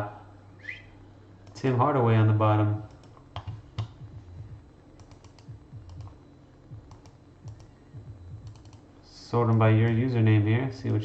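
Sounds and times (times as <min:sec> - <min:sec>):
typing on computer keyboard: 0:02.9 - 0:03.9, 0:05.0 - 0:06.2, 0:06.8 - 0:07.7, 0:08.4 - 0:08.8.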